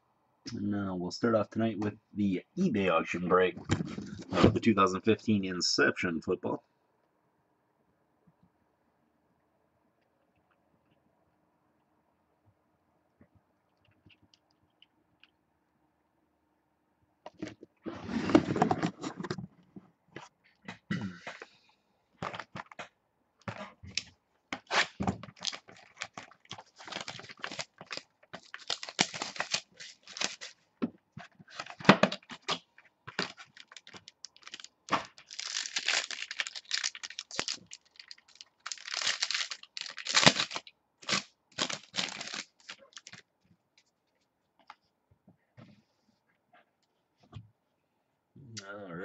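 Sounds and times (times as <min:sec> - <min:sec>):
wrapping tearing and crinkling: 0:23.5 - 0:30.6, 0:31.5 - 0:43.2.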